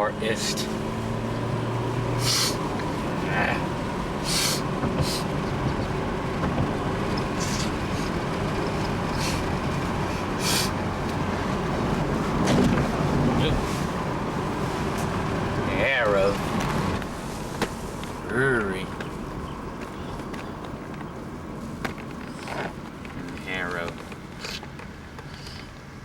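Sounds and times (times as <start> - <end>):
car engine and road rumble: 0.0 - 26.0
short hissing swells: 2.1 - 2.7, 4.2 - 5.3, 9.1 - 10.8.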